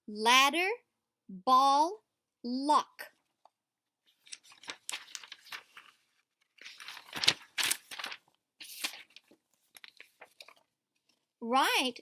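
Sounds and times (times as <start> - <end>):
paper rustling and crinkling: 4.1 - 11.3.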